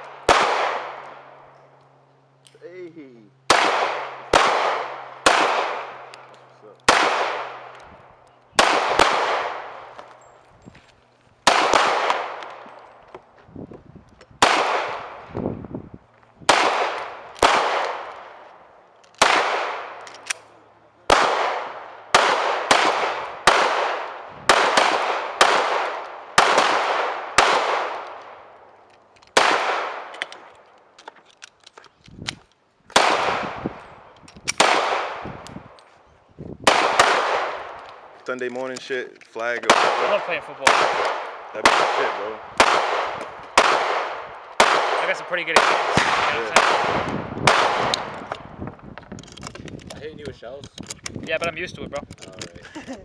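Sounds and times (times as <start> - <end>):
gunshots with ringing tail: 0.0 - 1.4, 3.4 - 7.8, 8.6 - 10.0, 11.4 - 12.7, 14.4 - 15.3, 16.5 - 18.4, 19.2 - 28.5, 29.4 - 30.1, 33.0 - 33.8, 34.6 - 35.4, 36.6 - 38.1, 39.6 - 48.5.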